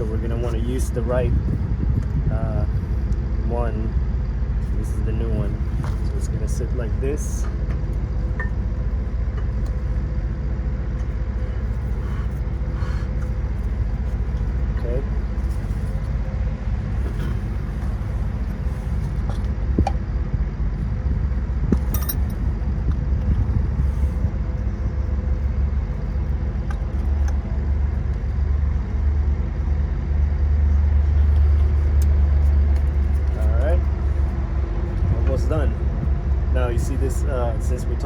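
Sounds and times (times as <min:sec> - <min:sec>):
steady low rumble: 0:00.0 - 0:38.0
metal brake parts clicking: 0:21.8 - 0:22.4.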